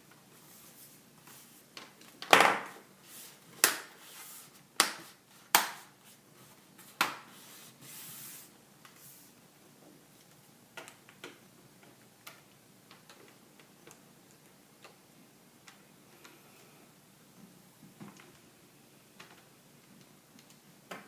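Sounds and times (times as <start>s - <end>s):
soft rubbing: 0.3s - 1.7s, 6.0s - 9.4s.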